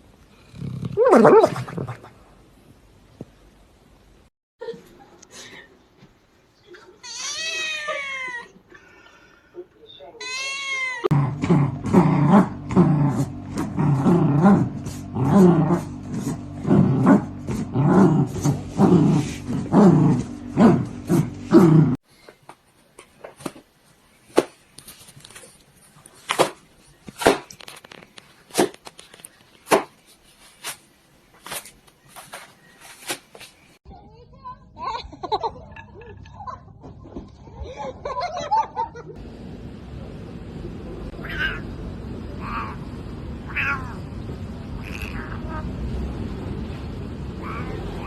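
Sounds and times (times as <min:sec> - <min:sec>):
dog growling: 0:11.1 - 0:22.0.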